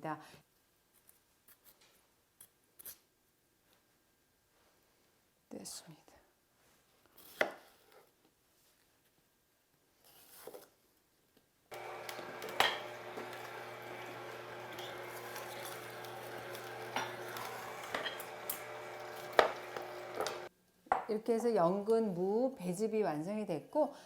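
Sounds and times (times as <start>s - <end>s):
blender motor grinding: 11.7s - 20.5s
dishes and utensils clinking: 12.1s - 20.4s.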